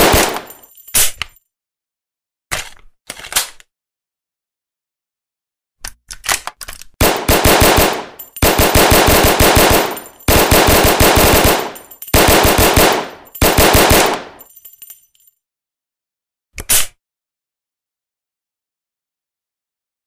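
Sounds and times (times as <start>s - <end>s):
submachine gun firing bursts: 0.0s - 0.5s, 7.0s - 14.4s.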